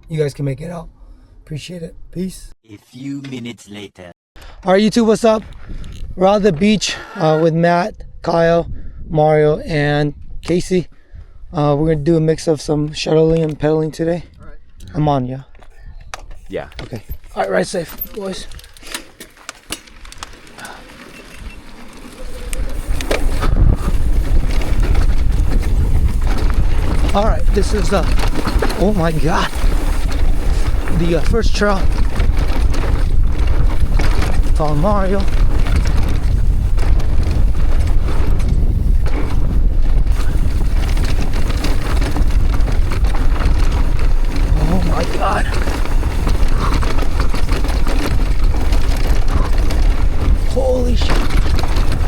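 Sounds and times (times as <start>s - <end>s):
wind: 0.0s - 3.4s, 4.4s - 52.0s
bike tyres rumbling on dirt: 16.6s - 52.0s.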